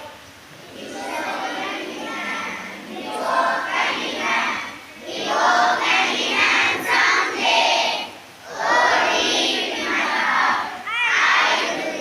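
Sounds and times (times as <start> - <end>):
children chanting in unison: 0.0 - 12.0.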